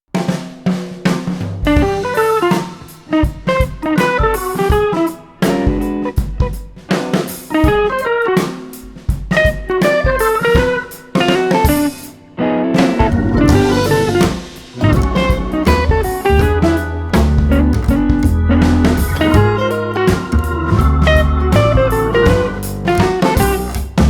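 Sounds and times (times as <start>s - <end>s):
drum kit beat: 0.1s - 12.2s, 12.8s - 24.0s
plucked guitar melody: 12.4s - 24.0s.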